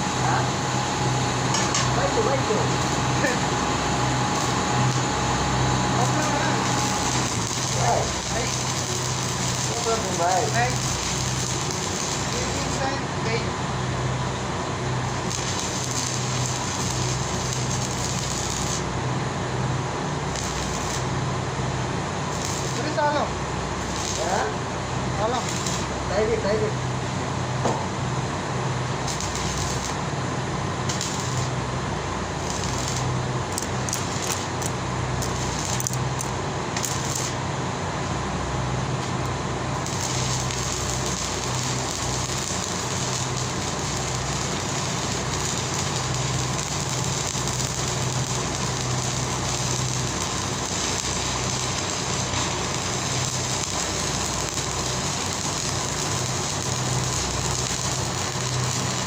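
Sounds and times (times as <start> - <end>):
machine humming and hissing: 0.0 - 59.0.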